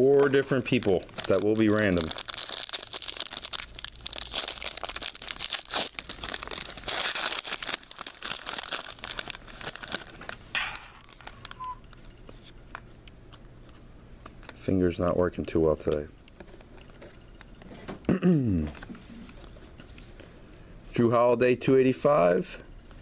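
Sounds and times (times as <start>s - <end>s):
plastic wrapping crinkling: 0.1s - 12.5s.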